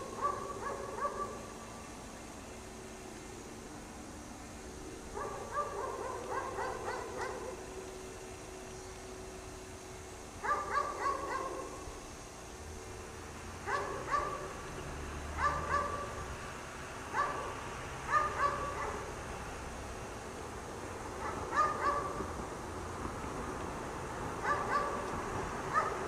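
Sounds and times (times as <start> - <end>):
dog barking: 0.1 - 1.5, 5.1 - 7.6, 10.4 - 11.8, 13.7 - 14.5, 15.4 - 16.1, 17.1 - 19.1, 21.2 - 22.2, 24.4 - 25.1, 25.7 - 26.0.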